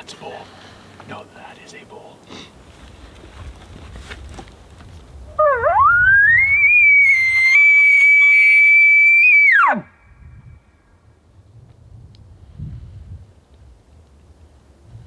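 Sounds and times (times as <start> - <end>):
elk bugling: 5.3 - 9.9.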